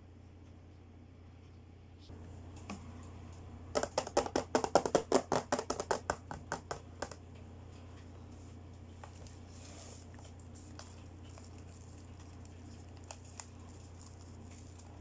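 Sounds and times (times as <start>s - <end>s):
faint hum: 0.0s - 15.0s
plastic toy clicks and taps: 3.8s - 7.2s.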